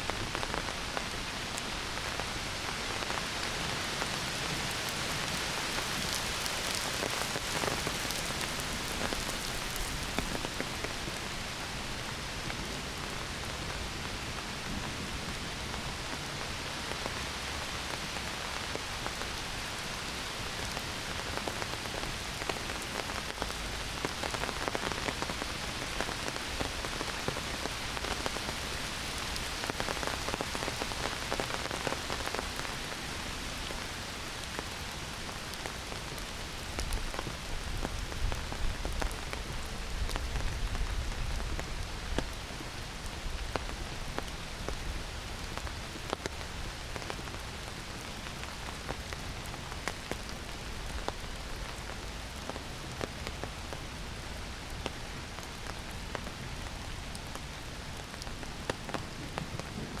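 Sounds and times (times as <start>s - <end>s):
heavy rain on foliage: 0.0s - 60.0s.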